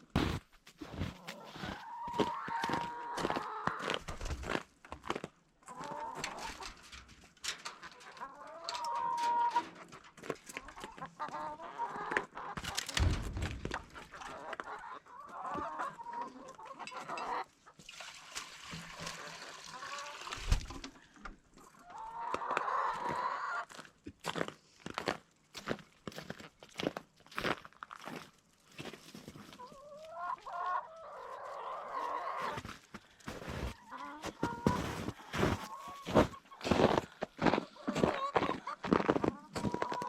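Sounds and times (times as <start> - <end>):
chickens clucking: 0.9 - 4.5, 5.5 - 17.9, 19.0 - 23.8, 29.4 - 40.0
low thump: 13.0 - 14.1.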